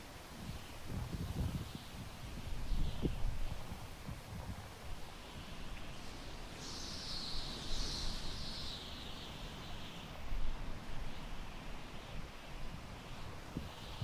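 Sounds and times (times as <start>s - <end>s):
wind rumble on microphone: 0.0s - 14.0s.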